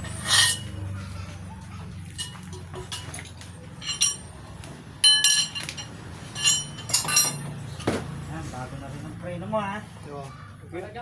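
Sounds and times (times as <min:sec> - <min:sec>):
metal tools clinking: 0:00.0 - 0:00.8, 0:02.1 - 0:07.9.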